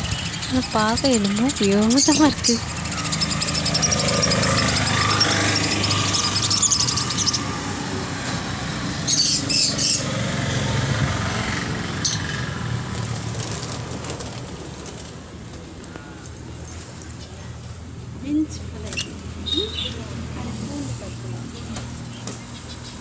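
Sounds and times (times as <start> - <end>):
small birds chirping: 0.0 - 8.0, 8.9 - 10.3, 15.6 - 23.0.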